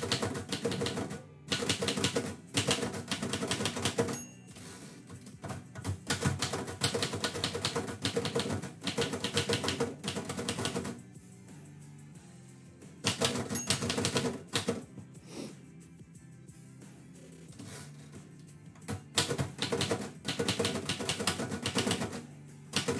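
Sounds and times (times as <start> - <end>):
typewriter keys clacking: 0.0 - 11.0, 13.1 - 14.8, 18.8 - 22.9.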